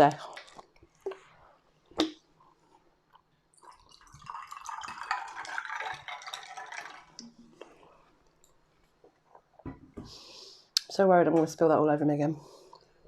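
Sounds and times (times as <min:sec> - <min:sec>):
sparkling water fizzing: 0:03.7 - 0:07.4.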